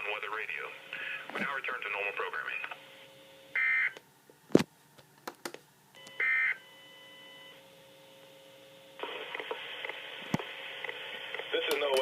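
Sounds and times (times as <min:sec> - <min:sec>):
broadcast hiss: 0:00.0 - 0:06.6, 0:07.7 - 0:12.0.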